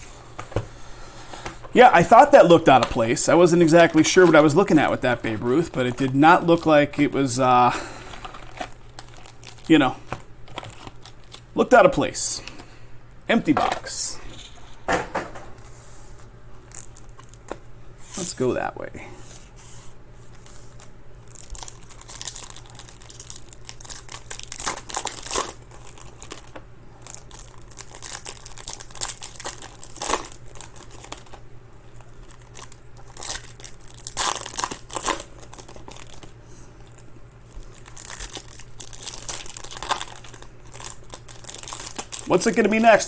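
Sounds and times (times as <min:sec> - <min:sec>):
plastic wrapping crinkling and tearing: 0:01.8 - 0:11.5, 0:16.6 - 0:17.6, 0:20.2 - 0:43.0.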